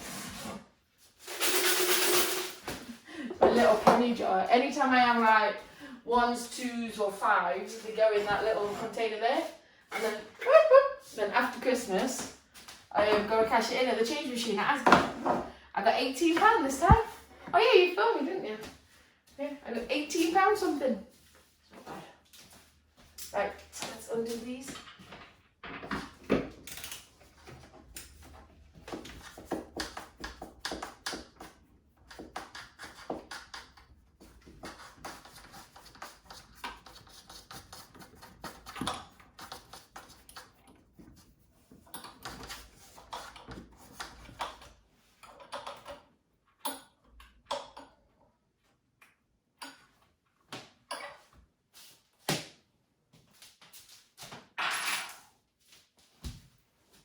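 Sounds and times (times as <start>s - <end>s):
clicks and scrapes of wall fittings: 24.7s - 48.2s.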